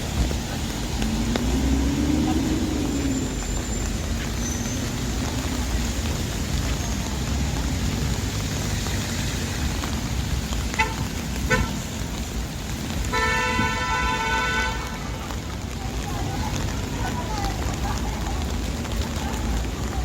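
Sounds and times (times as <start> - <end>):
rain hissing: 0.0 - 20.0
traffic on wet streets: 0.0 - 20.0
long horn blast: 13.1 - 15.1.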